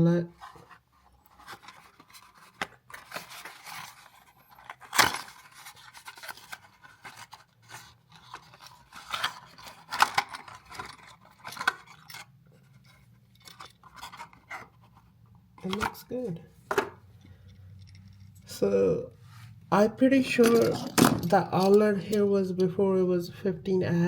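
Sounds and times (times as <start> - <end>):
plastic packaging rustling and scraping: 0.3 - 18.4.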